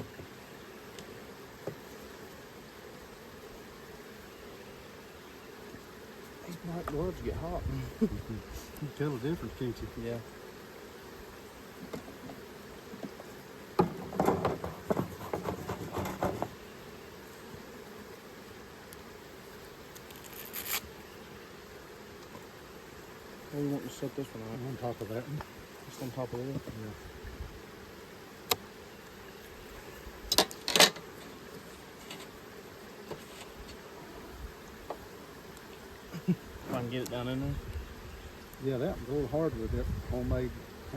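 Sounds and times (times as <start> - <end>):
faint hum of bees: 0.0 - 40.9
wooden beehive parts knocking: 11.8 - 13.2, 13.8 - 16.6.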